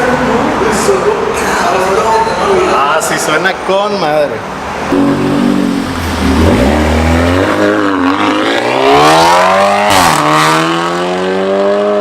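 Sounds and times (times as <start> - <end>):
car engine accelerating hard: 4.9 - 12.0.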